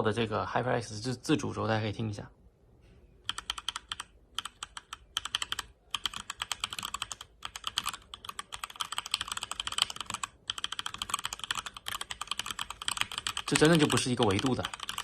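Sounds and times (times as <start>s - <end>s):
mechanical keyboard typing: 3.2s - 15.0s.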